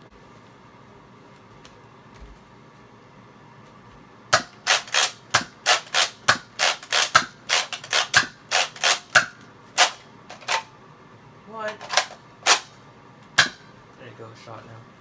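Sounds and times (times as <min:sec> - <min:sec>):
toy blaster pumping and firing: 0:04.6 - 0:10.6, 0:11.9 - 0:12.7.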